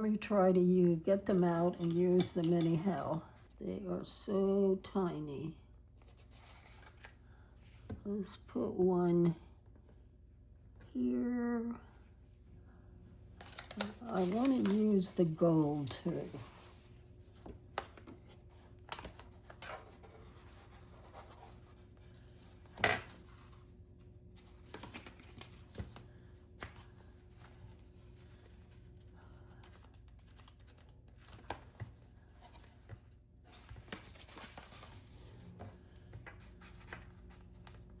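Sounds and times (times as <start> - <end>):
faint steady hum: 0.0 - 38.0.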